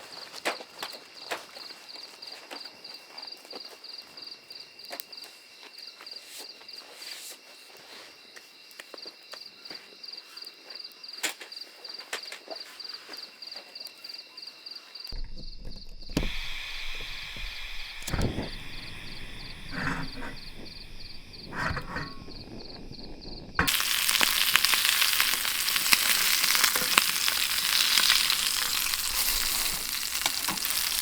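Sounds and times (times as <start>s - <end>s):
insects chirping: 0.0s - 31.0s
deeper ambience: 15.2s - 23.8s
sharp clicks: 15.9s - 22.3s
steady high drone: 16.1s - 23.8s.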